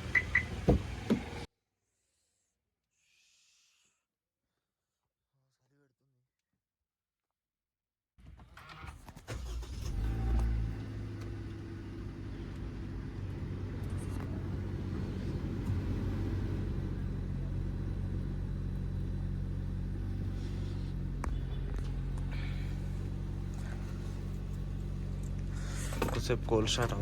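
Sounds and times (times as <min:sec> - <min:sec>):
car engine starting and idling: 0:00.0 - 0:01.5, 0:08.3 - 0:27.0.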